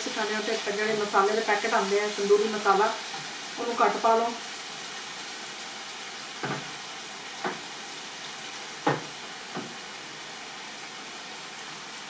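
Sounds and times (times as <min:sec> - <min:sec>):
meat sizzling in hot oil: 0:00.0 - 0:12.0.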